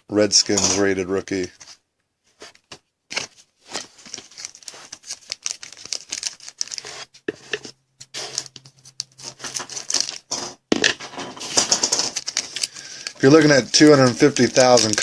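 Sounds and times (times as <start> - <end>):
foil wrapper crinkling and tearing: 3.1 - 7.1, 8.2 - 10.3, 11.4 - 15.0.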